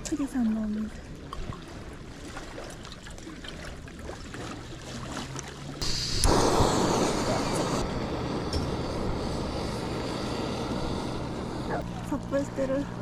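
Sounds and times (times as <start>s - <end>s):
lake water lapping: 0.0s - 7.9s
wind: 0.0s - 13.0s.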